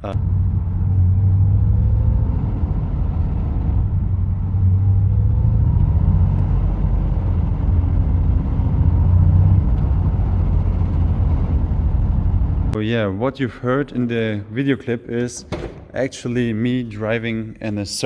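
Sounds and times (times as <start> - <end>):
car engine low rumble: 0.0 - 12.8.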